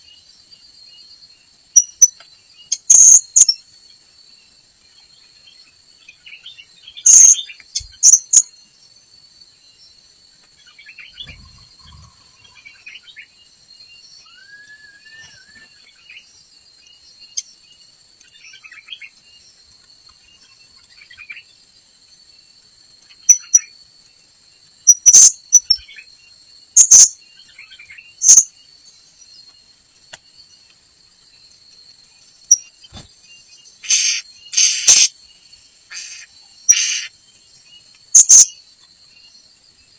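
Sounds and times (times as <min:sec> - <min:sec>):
insects droning: 0:00.0 - 0:39.9
parrots calling: 0:33.8 - 0:35.1, 0:35.9 - 0:37.1.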